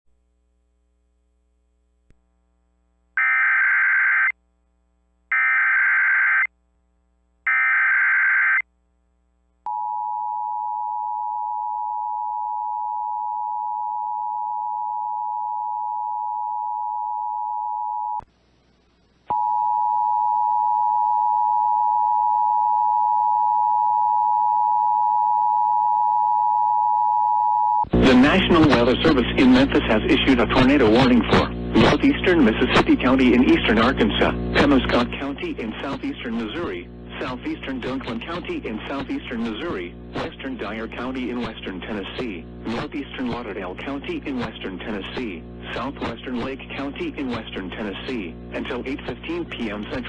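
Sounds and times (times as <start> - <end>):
radio hiss and hum: 27.9 - 50.0.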